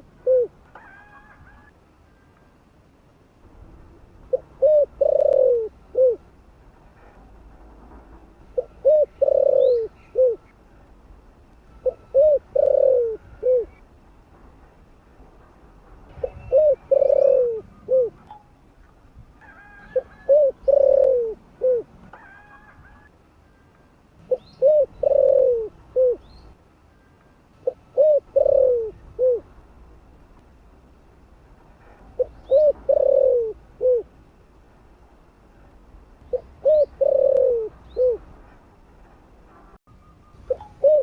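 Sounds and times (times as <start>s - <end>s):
dove cooing: 0.0s - 1.4s, 4.3s - 6.2s, 8.6s - 10.5s, 11.8s - 13.8s, 16.2s - 18.2s, 19.5s - 23.1s, 24.2s - 26.3s, 27.6s - 29.5s, 32.2s - 34.1s, 36.3s - 38.3s, 40.5s - 41.0s.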